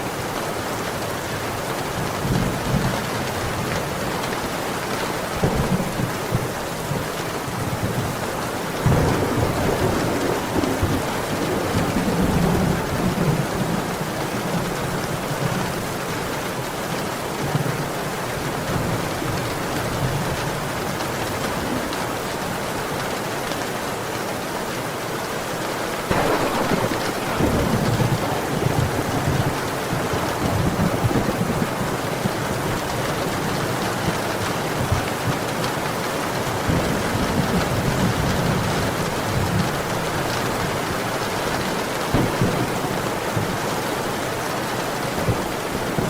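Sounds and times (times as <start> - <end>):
heavy rain: 0.0 - 46.0
loud thunderclap: 8.8 - 14.6, 26.1 - 33.4, 42.1 - 43.8
low rolling thunder: 8.8 - 15.8, 26.1 - 35.5, 42.0 - 44.4.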